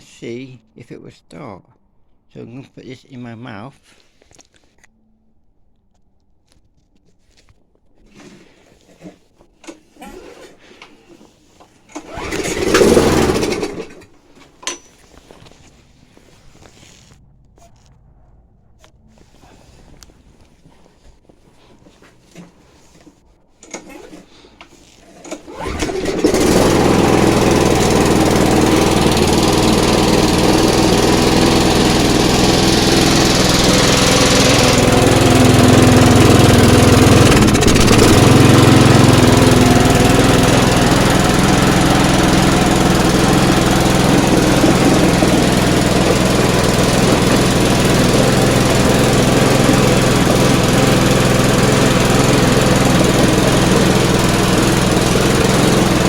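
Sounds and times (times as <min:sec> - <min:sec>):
lawnmower engine starting and running: 0:08.1 - 0:15.7, 0:21.9 - 0:56.0.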